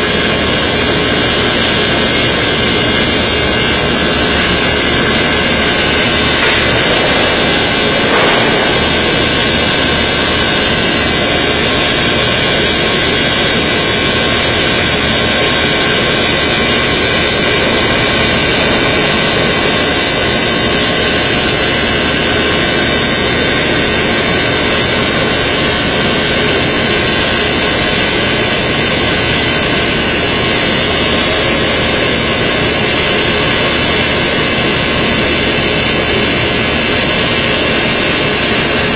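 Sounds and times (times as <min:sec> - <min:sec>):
faint machine hum: 0:00.0 - 0:38.9
industrial seam welding machinery roar: 0:00.0 - 0:38.9.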